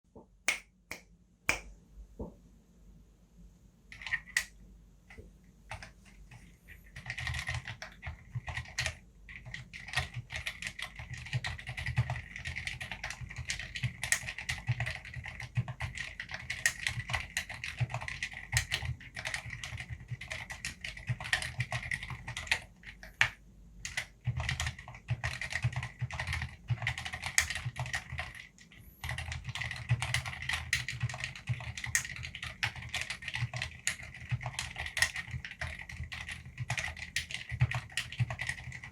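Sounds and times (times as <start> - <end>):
typing on mechanical keyboard: 3.9 - 4.6, 5.7 - 38.9.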